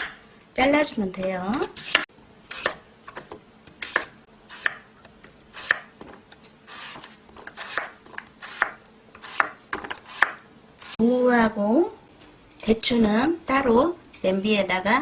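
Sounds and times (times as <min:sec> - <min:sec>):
knife chopping on cutting board: 0:00.0 - 0:00.2, 0:01.5 - 0:04.9, 0:05.6 - 0:11.0.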